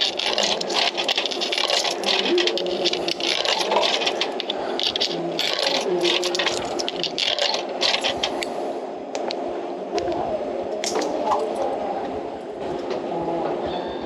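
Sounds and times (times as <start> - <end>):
coins rattling through coin mechanism: 0.0 - 8.5
faint machine hum: 0.0 - 14.0.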